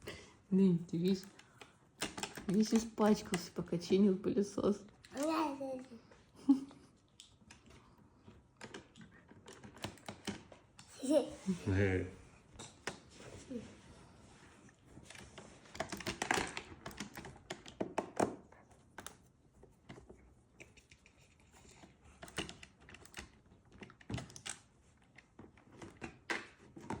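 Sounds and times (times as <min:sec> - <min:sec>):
plastic parts clicking and knocking: 0:01.1 - 0:04.0, 0:07.3 - 0:10.9, 0:15.0 - 0:27.0.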